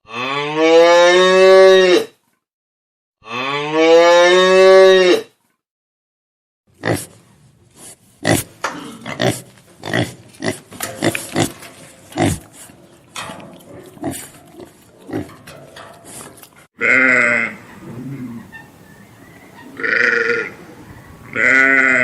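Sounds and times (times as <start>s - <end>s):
wavering bleat: 3.2s - 5.2s, 16.8s - 18.7s, 19.6s - 20.6s, 21.3s - 22.0s
pig grunting: 8.2s - 18.7s.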